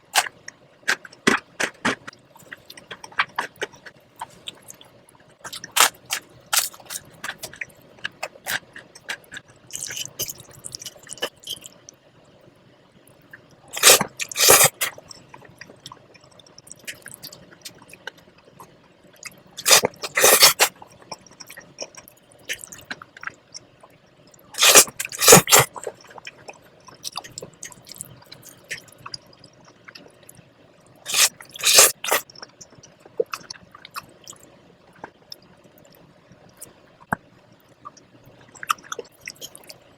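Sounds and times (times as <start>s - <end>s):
wet chewing: 0.9s - 11.8s, 19.2s - 23.6s, 24.6s - 30.1s, 31.1s - 37.1s, 37.8s - 39.8s
spaghetti being slurped: 13.8s - 15.0s, 19.6s - 20.7s, 24.6s - 26.3s, 31.1s - 32.3s.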